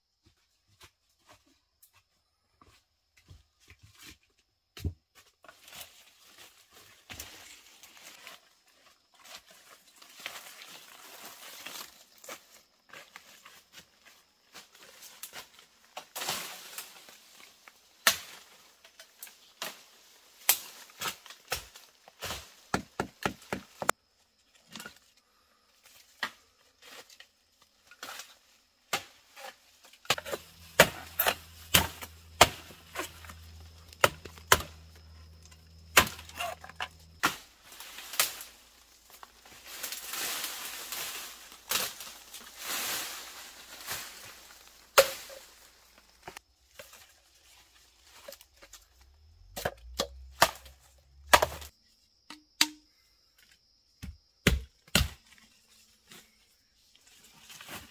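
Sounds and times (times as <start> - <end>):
wood chopping strikes: 22.7 - 23.9, 30.1 - 35.0, 35.8 - 37.4, 45.0 - 45.4, 49.5 - 51.7, 52.3 - 52.9, 54.0 - 55.2.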